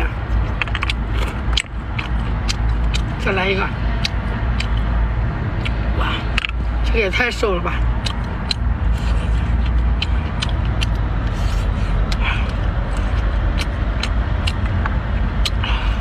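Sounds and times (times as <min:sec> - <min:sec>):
steady low rumble: 0:00.0 - 0:16.0
clicks of shell and teeth: 0:00.4 - 0:03.2, 0:04.0 - 0:05.0, 0:05.6 - 0:06.6, 0:08.0 - 0:08.7, 0:09.6 - 0:11.3, 0:12.1 - 0:15.7.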